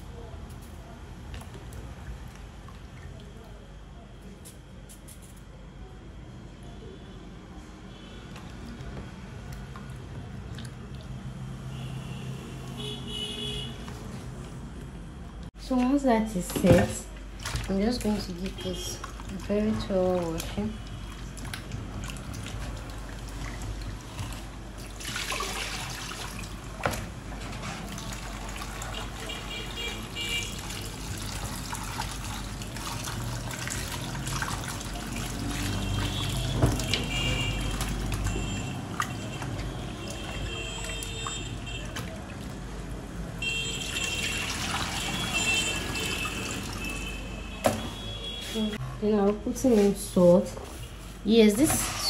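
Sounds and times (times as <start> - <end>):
water sloshing in a bowl: 0.6 - 4.3, 8.1 - 13.0, 15.7 - 52.0.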